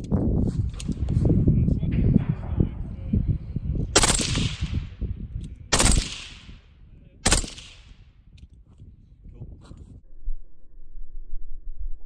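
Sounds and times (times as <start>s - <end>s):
suppressed rifle shots with echo: 4.0s - 5.1s, 5.7s - 8.0s.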